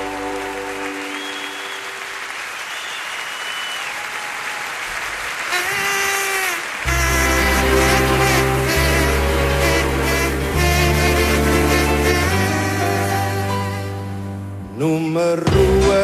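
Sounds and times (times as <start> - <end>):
audience applauding: 0.0 - 13.8
held musical notes: 6.8 - 14.6
band playing with heavy bass: 6.9 - 14.3.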